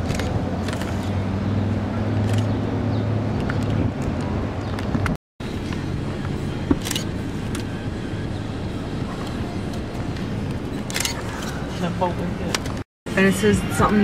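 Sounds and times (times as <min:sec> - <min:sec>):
large diesel engine humming: 0:05.4 - 0:14.0.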